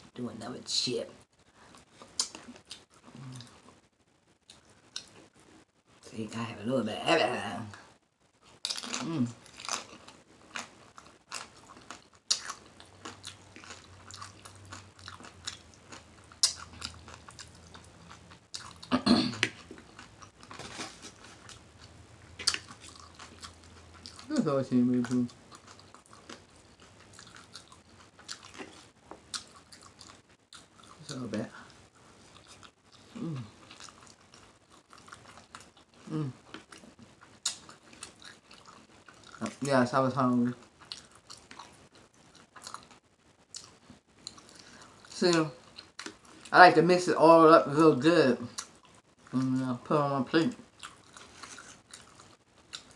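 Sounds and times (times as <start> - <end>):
chewing and lip smacking: 1.7 - 3.6, 8.6 - 20.6, 21.4 - 24.4, 25.0 - 31.1, 32.2 - 39.6, 40.6 - 46.5, 50.6 - 52.9
tortilla chips crunching: 8.5 - 21.6.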